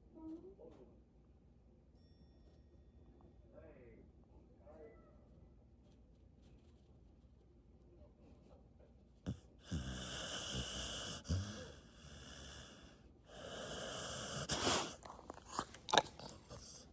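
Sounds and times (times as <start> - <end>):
dog snoring: 9.3 - 16.9
dog snorting: 9.3 - 16.9.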